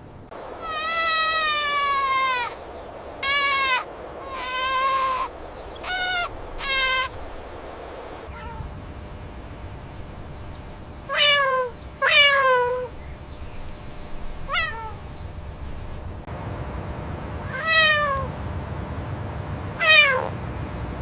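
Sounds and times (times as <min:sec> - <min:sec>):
animal calling: 0:00.4 - 0:08.7, 0:11.1 - 0:13.0, 0:14.4 - 0:15.2.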